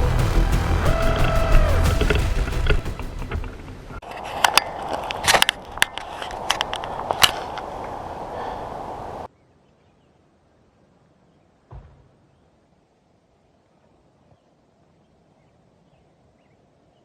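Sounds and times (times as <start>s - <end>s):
wheelchair wheels rolling over ground: 0.0s - 8.0s.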